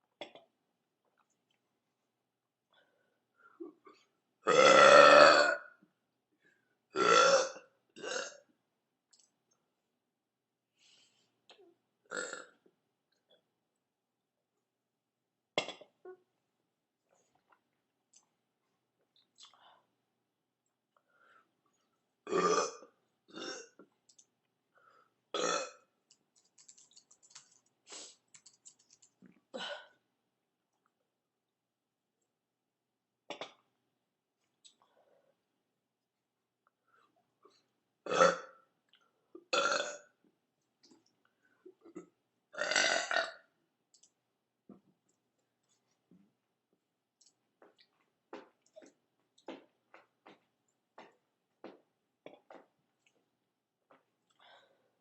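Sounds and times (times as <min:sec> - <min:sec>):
woman burping: 0:03.6 - 0:05.7, 0:07.0 - 0:08.4, 0:12.1 - 0:12.6, 0:22.2 - 0:23.8, 0:25.3 - 0:25.8, 0:38.0 - 0:38.6, 0:39.5 - 0:40.0, 0:41.8 - 0:43.4
woman belching: 0:04.5 - 0:05.6, 0:22.3 - 0:22.8.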